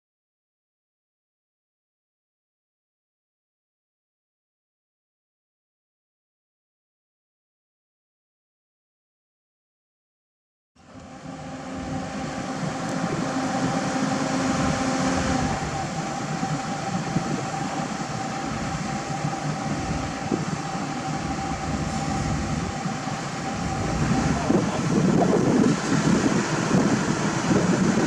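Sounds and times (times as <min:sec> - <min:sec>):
diesel engine running: 0:10.8 - 0:28.0
steady whine: 0:10.8 - 0:28.0.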